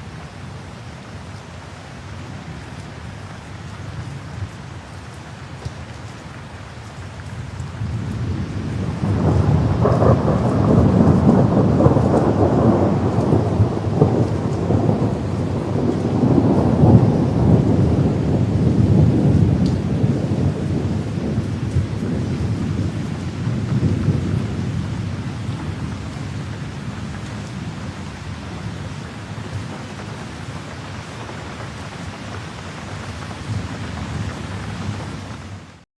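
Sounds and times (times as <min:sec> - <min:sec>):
steady rain: 0:00.0 - 0:35.9
thunder rolling: 0:07.8 - 0:35.4.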